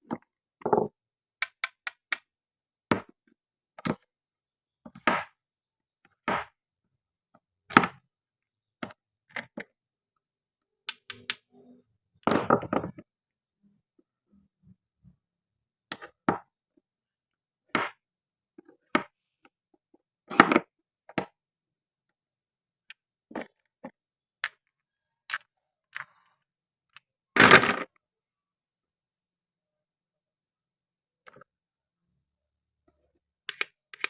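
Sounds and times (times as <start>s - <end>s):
toy pieces clicking and knocking: 1.4s - 2.3s, 33.5s - 34.0s.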